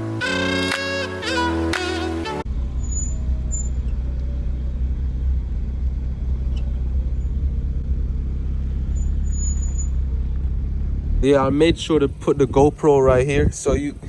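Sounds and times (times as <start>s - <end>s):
car road rumble: 1.3s - 14.0s
faint high-pitched squeaks: 2.8s - 4.1s, 8.9s - 10.0s.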